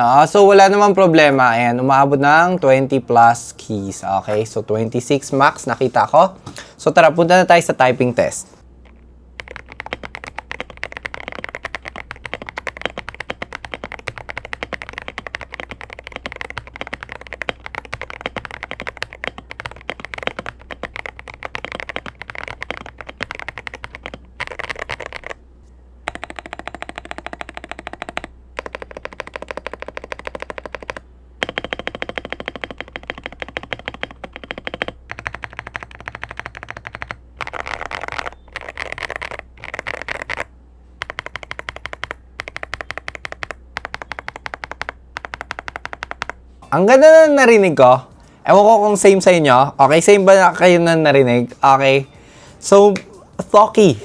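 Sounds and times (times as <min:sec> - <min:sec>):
mechanical keyboard typing: 0:08.2 - 0:25.4, 0:26.1 - 0:46.4.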